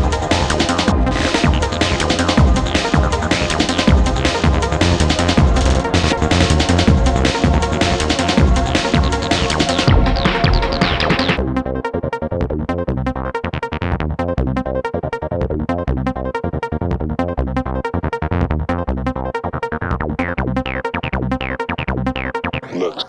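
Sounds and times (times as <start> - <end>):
electronic dance music: 0.0 - 11.4, 22.6 - 23.0.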